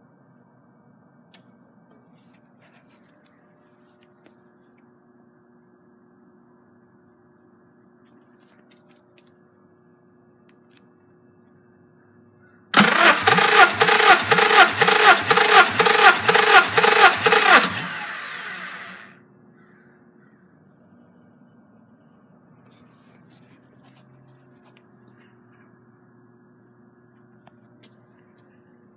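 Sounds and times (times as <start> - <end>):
starter motor cranking engine: 12.8 - 19.1.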